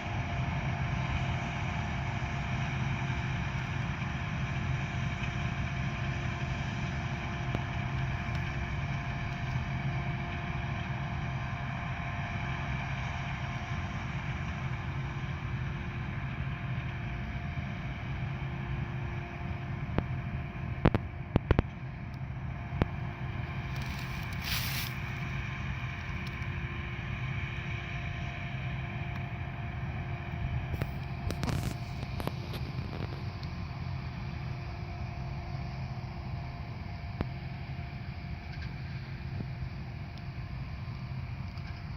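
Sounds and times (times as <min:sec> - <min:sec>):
combine harvester running: 0:00.0 - 0:41.9
brief hiss: 0:23.8 - 0:25.3.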